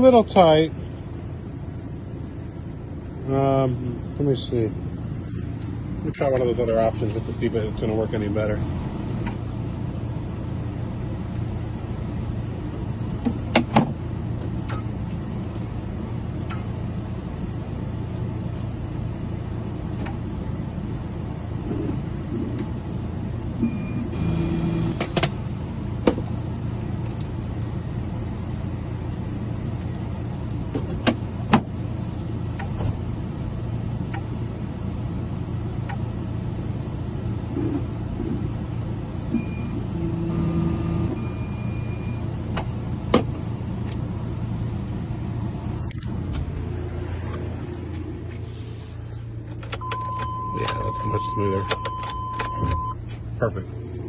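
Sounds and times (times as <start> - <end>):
steady low hum: 0.0 - 54.0
short electronic tone: 23.7 - 25.0.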